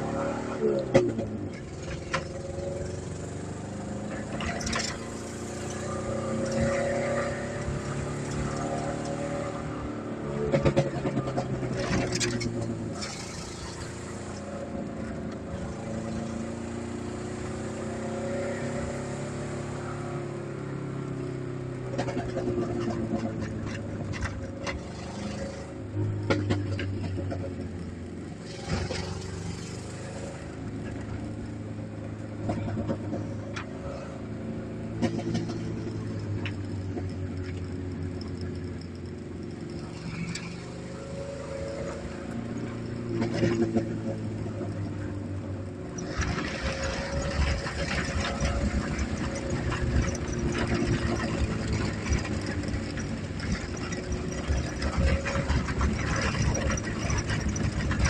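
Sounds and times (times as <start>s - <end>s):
car engine with loud exhaust: 0.0s - 58.0s
car knocks and rattles: 10.4s - 13.1s, 21.9s - 25.0s, 26.0s - 27.9s, 32.3s - 33.9s, 34.8s - 40.3s, 42.4s - 45.3s, 46.0s - 58.0s.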